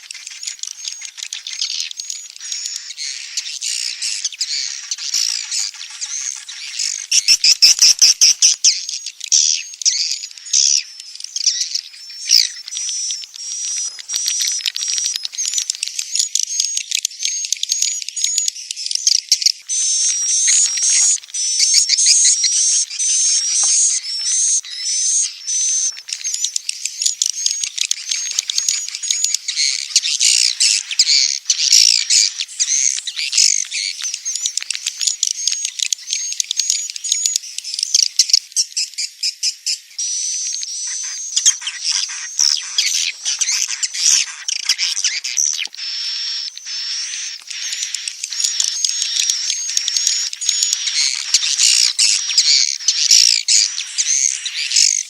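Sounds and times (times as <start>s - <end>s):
swiftlets twittering: 19.7s - 38.0s, 40.2s - 55.0s.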